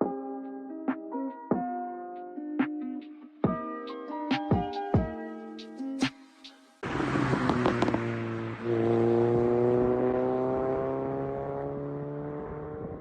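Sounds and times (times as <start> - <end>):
car engine accelerating: 6.8 - 13.0.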